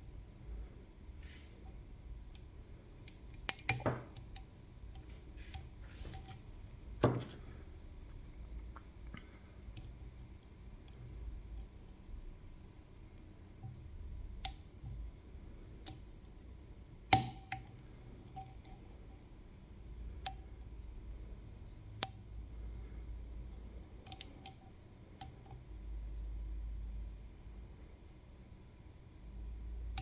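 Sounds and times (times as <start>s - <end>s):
lock picks clicking in lock: 3.0s - 6.4s, 17.1s - 18.8s.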